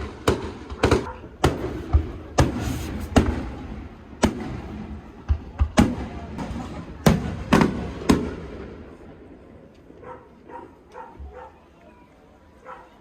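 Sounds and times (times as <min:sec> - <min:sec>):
fireworks shells bursting: 0:00.4 - 0:03.6.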